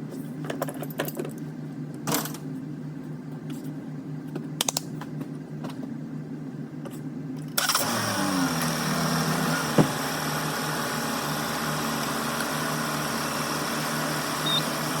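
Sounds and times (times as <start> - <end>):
car engine starting and idling: 7.4 - 15.0.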